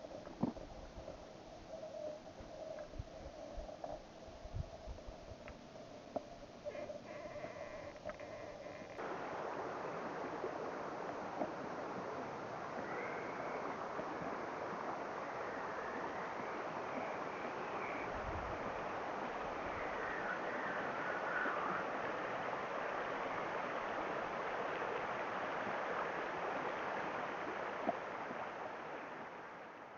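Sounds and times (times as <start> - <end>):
rush of flowing water: 6.6 - 29.9.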